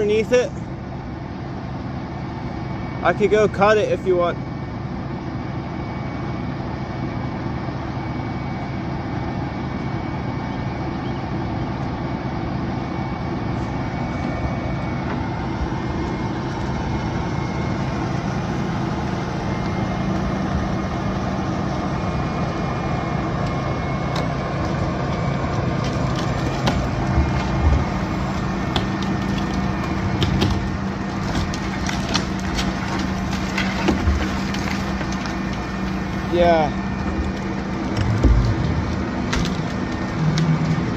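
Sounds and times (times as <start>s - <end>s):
heavy machine engine running: 0.0s - 40.9s
wood cracking and splintering: 13.8s - 40.9s.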